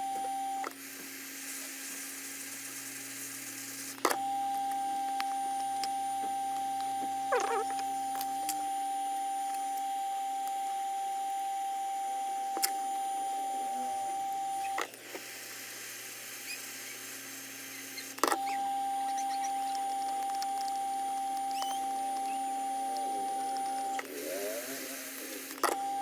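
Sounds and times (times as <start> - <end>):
high electronic whine: 16.4 - 26.0.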